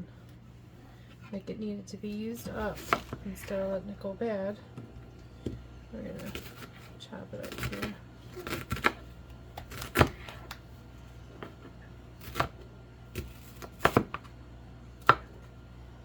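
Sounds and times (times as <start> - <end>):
knife cutting onion: 6.2 - 9.0, 12.2 - 12.6.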